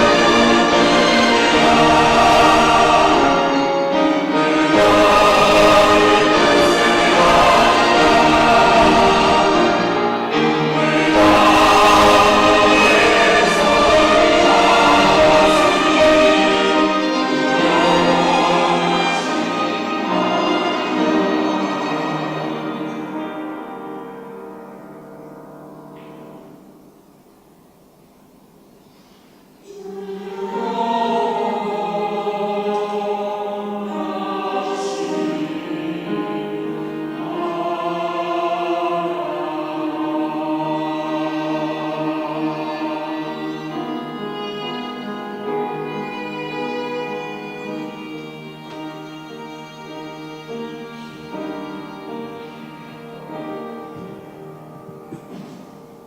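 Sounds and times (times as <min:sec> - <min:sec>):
instruments accompanying: 0:00.0 - 0:23.8
choir singing in harmony: 0:00.0 - 0:25.1, 0:29.4 - 0:56.0.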